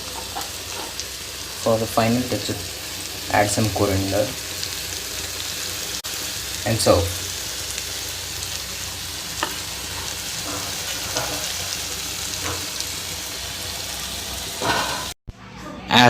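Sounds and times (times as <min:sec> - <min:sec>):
scrape in pan: 0:00.0 - 0:01.1, 0:09.4 - 0:12.9, 0:14.5 - 0:15.1
curry sizzling in a pan: 0:00.0 - 0:15.2.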